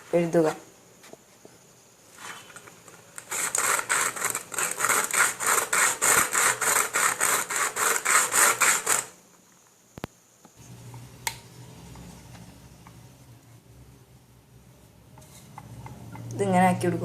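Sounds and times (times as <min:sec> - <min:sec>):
blade sawing through tin can: 0:03.2 - 0:09.1.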